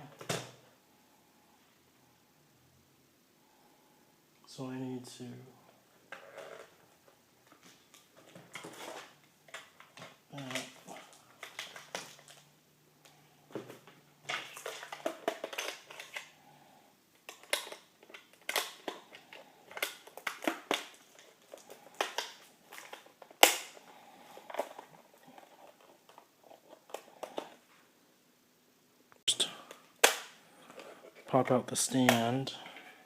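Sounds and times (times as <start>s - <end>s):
hard plastic clicking and crinkling: 6.1s - 16.4s, 17.1s - 27.6s.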